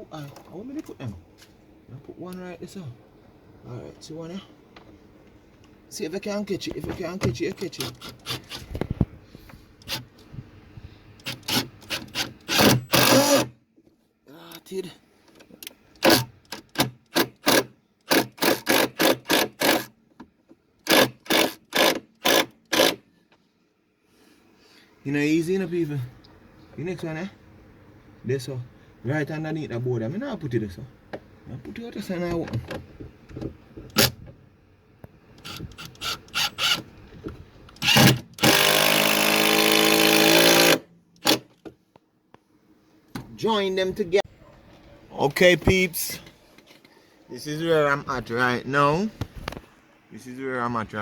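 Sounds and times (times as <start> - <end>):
screws driven into wood: 7.7 - 8.8, 9.8 - 10.1, 11.2 - 13.5, 16.0 - 19.9, 20.8 - 23.0, 35.4 - 36.9, 37.8 - 41.6
power drill whining: 11.2 - 13.5, 35.4 - 36.8, 37.8 - 40.8.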